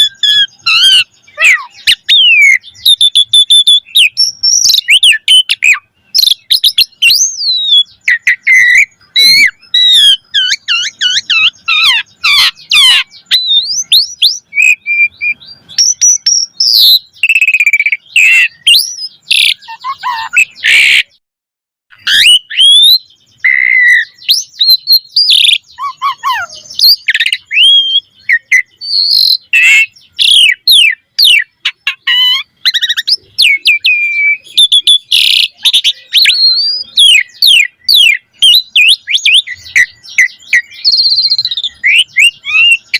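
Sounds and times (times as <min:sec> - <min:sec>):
bird singing varied song: 0:00.0 - 0:21.2, 0:21.9 - 0:42.9.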